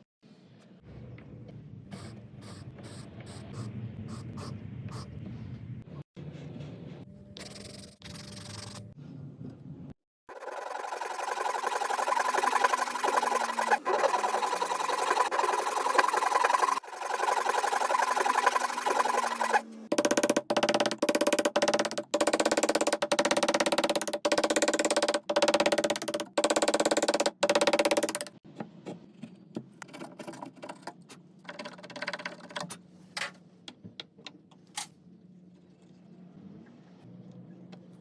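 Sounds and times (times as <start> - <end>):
hand saw cutting wood: 10.3 - 19.7.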